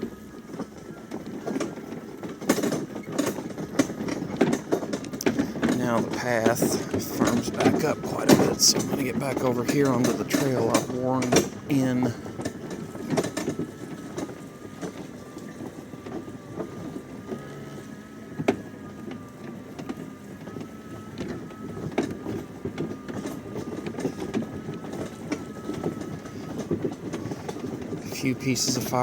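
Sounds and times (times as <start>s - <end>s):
electric mower whine: 0.0s - 29.0s
rattle of mower and wagon: 0.0s - 29.0s.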